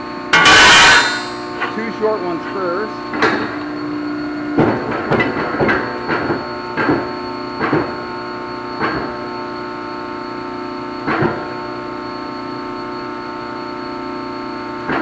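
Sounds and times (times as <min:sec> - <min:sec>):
steady machine hum: 0:00.0 - 0:15.0
metal clanks and knocks: 0:00.4 - 0:01.9.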